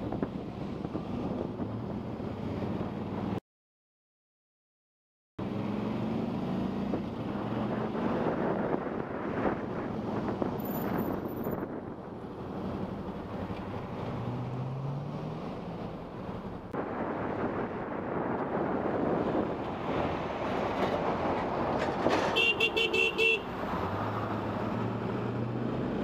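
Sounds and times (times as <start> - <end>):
wind rushing over microphone: 0.0 - 3.4, 5.5 - 22.4.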